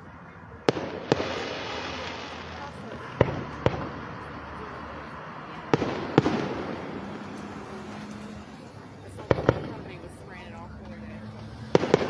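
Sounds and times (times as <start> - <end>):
firework shells bursting: 5.7 - 10.0.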